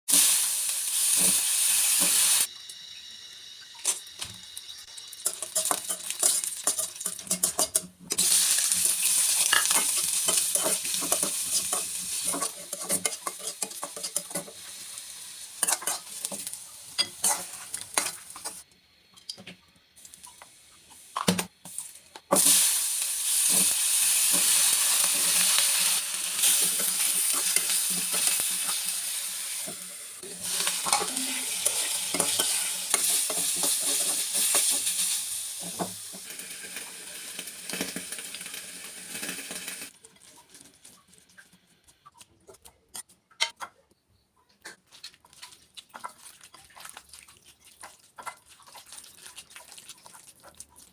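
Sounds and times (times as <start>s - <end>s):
food sizzling in hot oil: 0.1s - 18.7s, 19.9s - 41.2s
spatula scraping pan: 5.2s - 15.0s, 15.6s - 18.6s.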